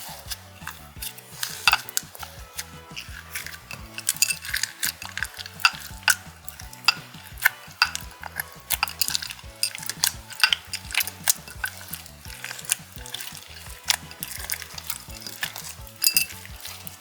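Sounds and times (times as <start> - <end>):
slime squishing and popping: 0.0 - 17.0.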